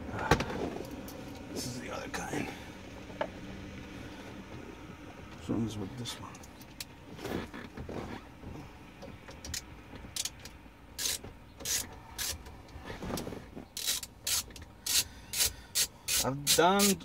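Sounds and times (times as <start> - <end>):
tools scraping and rubbing: 11.0 - 17.0.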